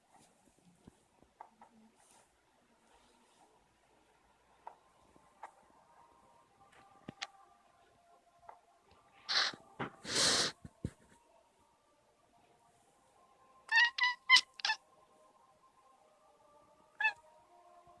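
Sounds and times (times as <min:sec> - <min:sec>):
cat chirping meows: 0:09.3 - 0:09.6, 0:13.7 - 0:14.8, 0:16.9 - 0:17.2
short hiss-like noises: 0:09.3 - 0:11.1.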